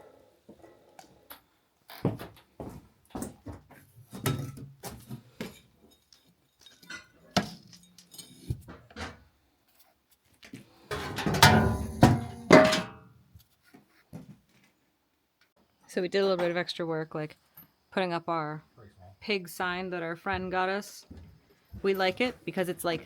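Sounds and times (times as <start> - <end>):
objects knocking and clattering: 4.1 - 9.2, 10.9 - 13.1.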